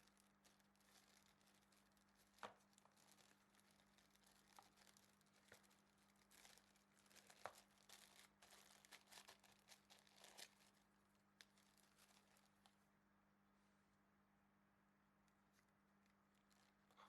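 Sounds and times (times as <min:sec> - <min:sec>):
packaging crinkling and rustling: 0:00.0 - 0:12.8, 0:16.4 - 0:17.0
faint steady hum: 0:00.0 - 0:17.0.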